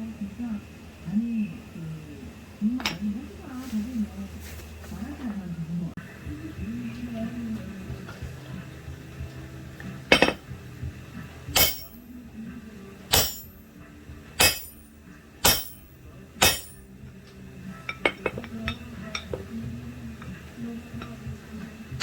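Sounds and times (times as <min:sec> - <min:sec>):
hammer striking steel: 0:10.1 - 0:10.4, 0:11.5 - 0:12.0, 0:13.1 - 0:13.6, 0:14.4 - 0:16.9.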